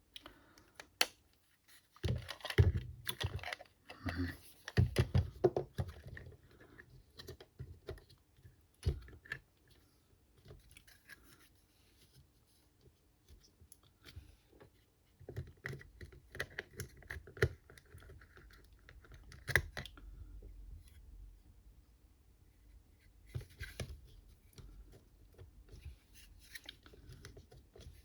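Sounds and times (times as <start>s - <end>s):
plastic parts clicking and tapping: 2.0s - 6.4s.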